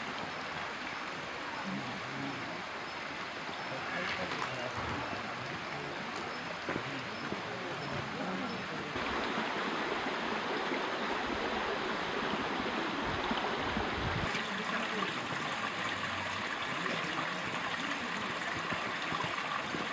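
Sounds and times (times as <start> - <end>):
stream rushing over rocks: 9.0 - 19.9.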